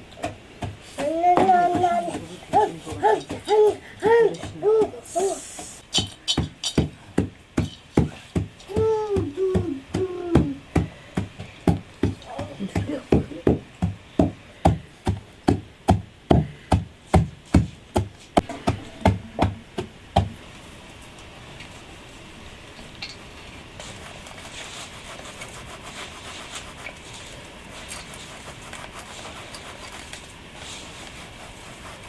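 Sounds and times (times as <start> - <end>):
chopping on wooden surface: 6.0 - 20.4.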